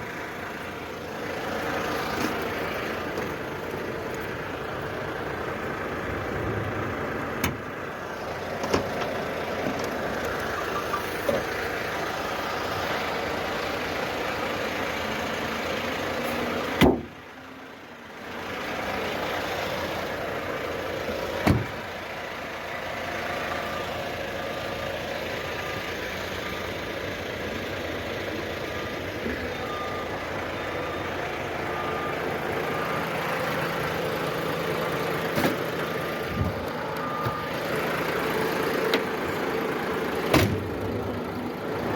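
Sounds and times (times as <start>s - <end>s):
diesel engine running: 0.0s - 41.9s
faint reversing alarm beeping: 28.3s - 35.3s, 36.1s - 38.6s.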